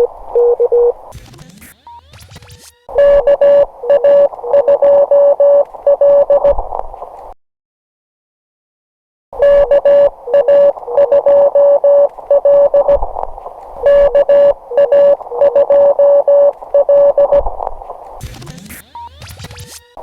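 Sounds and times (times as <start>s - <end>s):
morse code tone: 2.9s - 6.4s, 9.4s - 13.0s, 13.8s - 17.4s, 18.7s - 19.2s.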